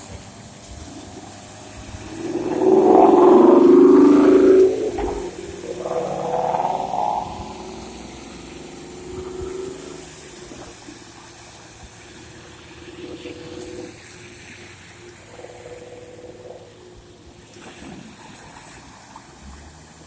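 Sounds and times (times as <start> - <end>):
passing car engine hum: 0.0 - 11.5.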